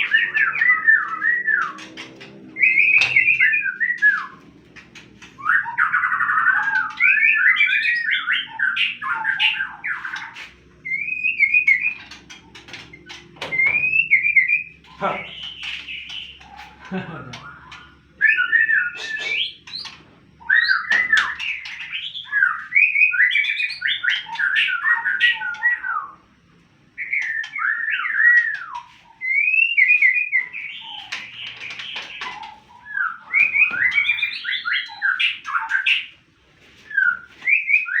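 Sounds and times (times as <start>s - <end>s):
songbird singing: 0.0s - 26.3s, 26.9s - 38.0s.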